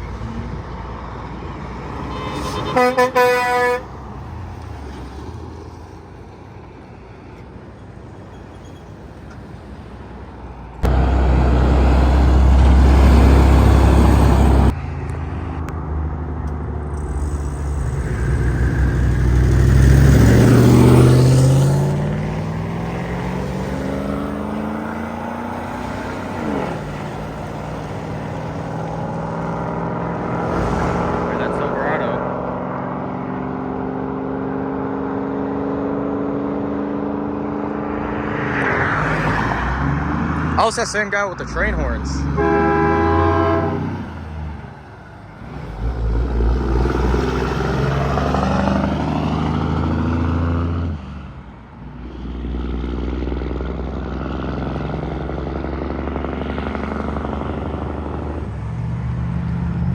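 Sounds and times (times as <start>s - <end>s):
truck horn: 2.0s - 4.0s, 17.0s - 20.4s, 41.6s - 44.1s
heavy vehicle engine accelerating: 10.6s - 59.9s
loud low rumble: 16.9s - 21.5s.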